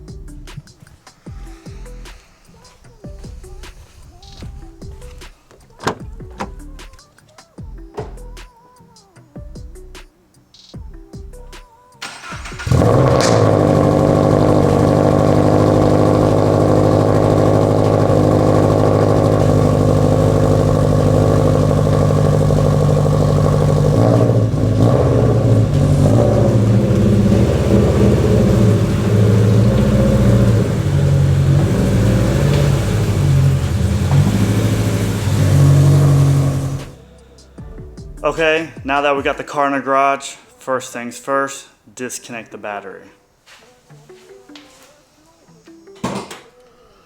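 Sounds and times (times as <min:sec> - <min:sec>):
car engine starting and idling: 0:01.4 - 0:07.0, 0:12.0 - 0:38.9.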